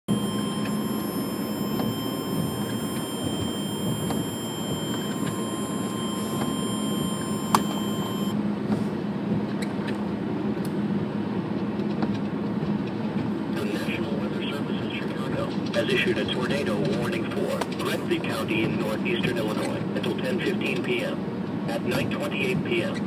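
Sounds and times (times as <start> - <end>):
faint high whine: 0.1 - 8.4
vehicle engine rumble from inside: 0.1 - 16.8.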